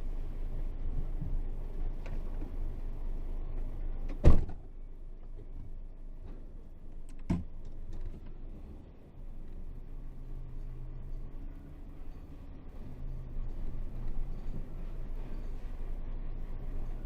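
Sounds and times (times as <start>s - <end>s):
diesel truck engine idling: 4.7s - 17.0s.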